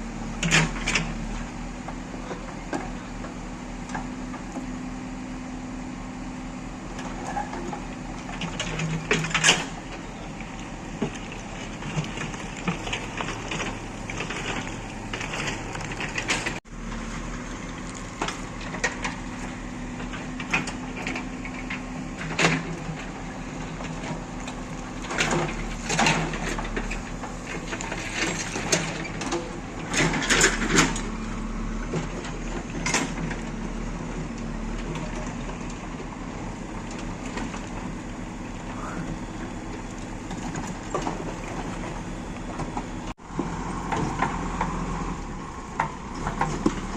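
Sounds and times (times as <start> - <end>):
diesel engine running: 0.0 - 46.9.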